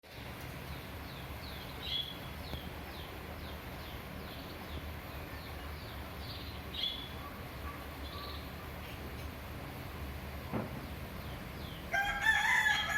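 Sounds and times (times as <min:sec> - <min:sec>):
low background noise: 0:00.1 - 0:12.9
bird chirping: 0:00.7 - 0:07.2.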